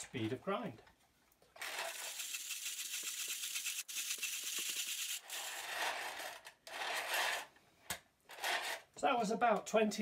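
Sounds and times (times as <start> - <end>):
hand coffee grinder crushing beans: 1.6 - 7.5.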